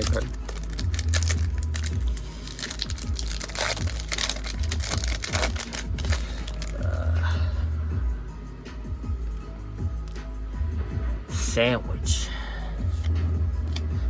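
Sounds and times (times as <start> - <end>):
foil wrapper crinkling and tearing: 0.0 - 6.8.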